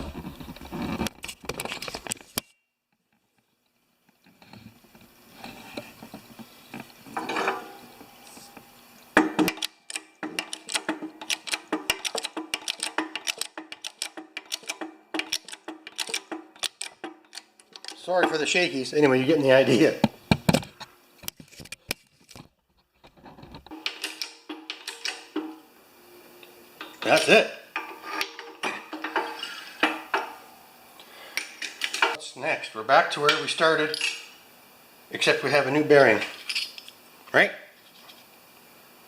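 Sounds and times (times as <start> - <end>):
metallic clicking of bearing press: 9.2 - 18.6.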